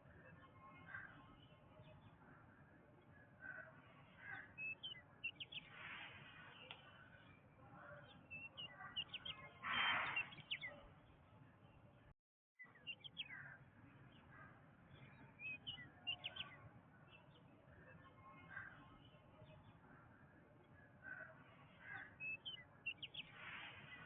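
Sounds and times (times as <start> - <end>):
birds chirping: 0.2 - 12.0, 12.6 - 24.0
harsh bird call: 8.6 - 10.7.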